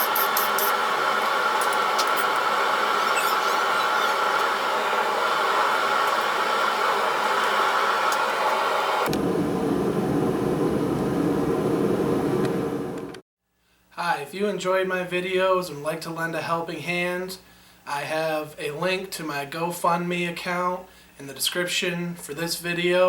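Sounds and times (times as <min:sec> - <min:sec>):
mechanical whirring: 0:00.0 - 0:11.7.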